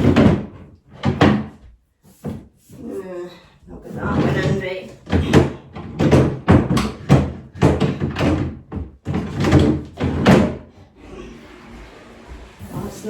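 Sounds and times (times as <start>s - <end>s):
wooden drawer knocking and scraping: 0.0s - 1.6s, 4.0s - 10.7s.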